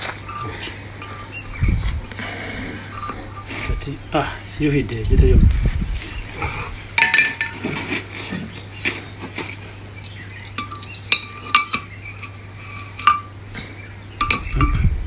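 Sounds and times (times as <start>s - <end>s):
steady low hum: 0.0s - 15.0s
metal tools clinking: 1.0s - 1.4s, 7.0s - 8.6s, 9.5s - 13.4s, 14.2s - 14.8s.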